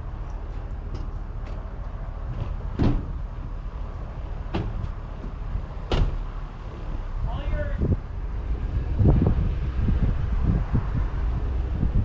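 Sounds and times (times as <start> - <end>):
engine low rumble: 0.0 - 12.0
sharp clunks of tow rope: 2.3 - 3.2, 4.5 - 6.2.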